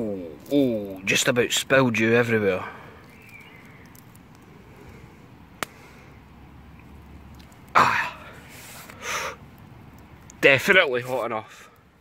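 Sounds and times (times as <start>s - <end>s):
campfire coal crackle pop: 3.0s - 11.9s
man exhaling breathily: 7.8s - 9.4s.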